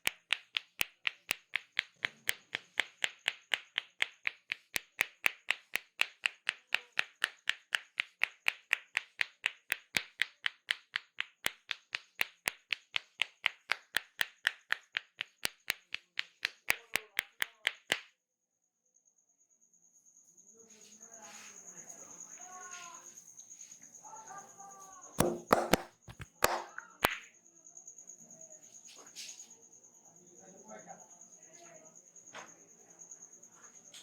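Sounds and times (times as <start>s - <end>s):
hands slapping in head massage: 0.0s - 18.1s, 25.2s - 27.2s.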